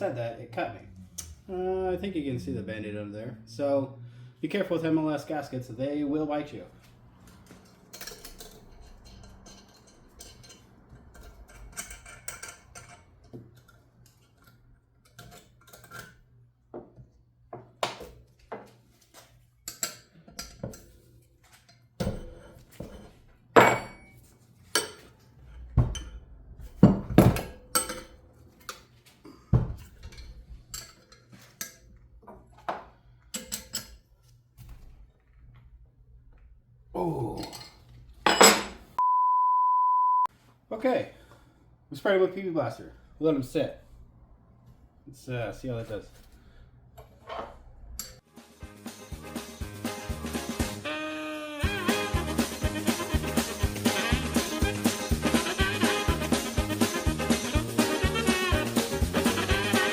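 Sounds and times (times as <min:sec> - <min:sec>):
metal tools clanking on workbench: 0:07.8 - 0:13.4, 0:21.6 - 0:24.2, 0:26.8 - 0:28.2, 0:37.4 - 0:38.8.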